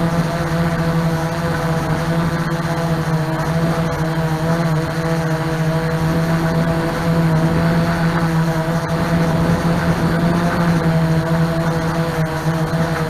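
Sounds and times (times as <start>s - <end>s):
drone propellers humming: 0.0s - 13.0s
rush of air: 8.8s - 11.0s.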